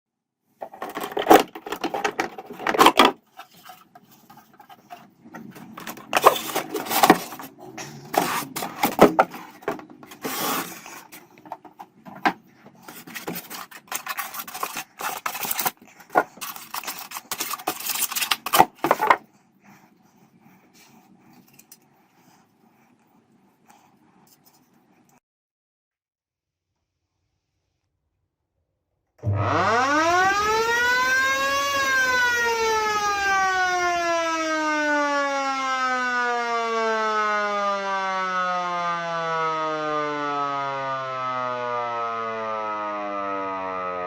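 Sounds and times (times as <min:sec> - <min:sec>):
hard objects scraping and clattering: 0:00.6 - 0:19.3.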